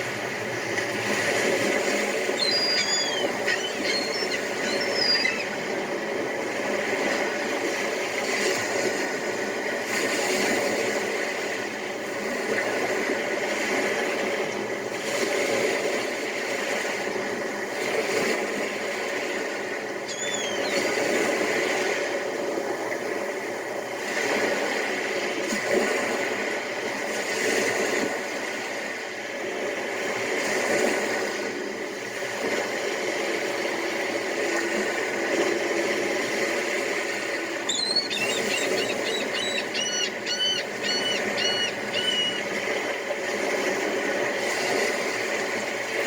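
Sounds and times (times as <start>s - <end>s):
surf washing on beach: 0.0s - 46.0s
bird calling high notes: 2.3s - 5.7s, 20.1s - 21.0s, 37.4s - 42.7s.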